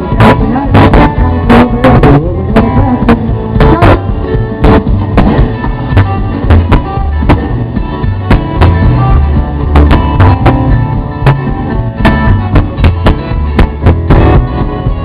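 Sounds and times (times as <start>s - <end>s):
electric guitar: 0.0s - 15.0s
steady drum beats: 0.0s - 15.0s
walking bass line: 0.0s - 15.0s.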